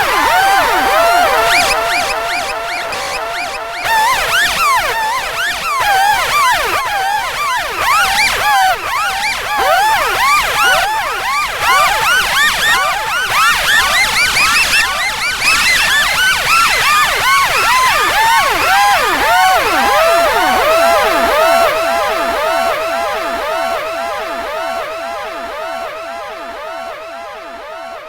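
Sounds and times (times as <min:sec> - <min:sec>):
police siren yelping: 0:00.0 - 0:21.7.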